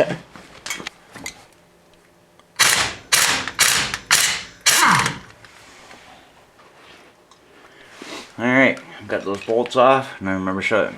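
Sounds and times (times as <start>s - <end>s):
impact wrench rattling: 2.6s - 5.4s.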